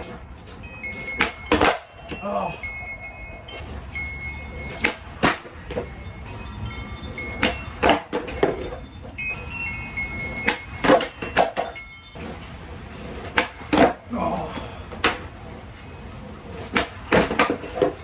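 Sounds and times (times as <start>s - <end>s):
skateboard clacking on pavement: 0.0s - 18.0s
wind chimes ringing: 0.2s - 13.2s.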